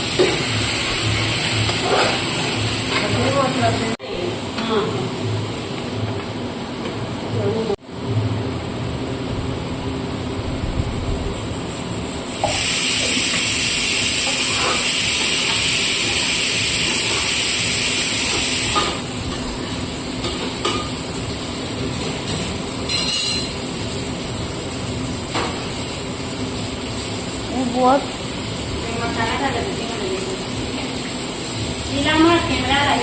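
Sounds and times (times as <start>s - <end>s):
food sizzling in a pan: 0.0s - 4.0s, 11.3s - 33.0s.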